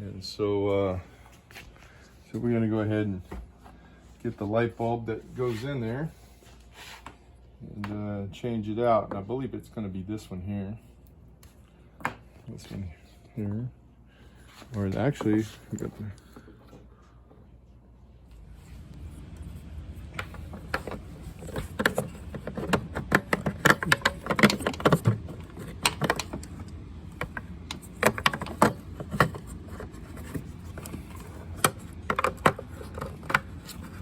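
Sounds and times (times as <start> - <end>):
plastic and metal parts clicking: 20.2 - 34.0.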